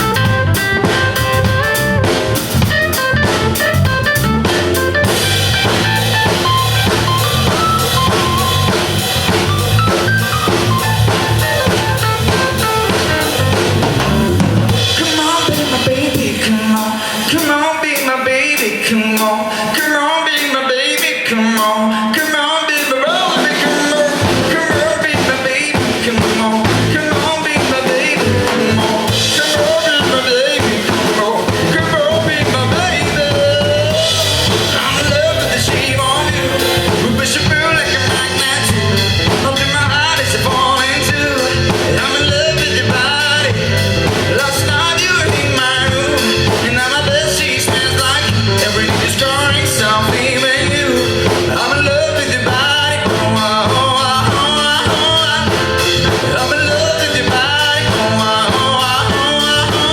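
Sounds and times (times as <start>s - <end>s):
wavering lead melody: 0.0s - 15.1s
drum kit and bass beat: 0.0s - 59.9s
pop band playing: 0.0s - 59.9s.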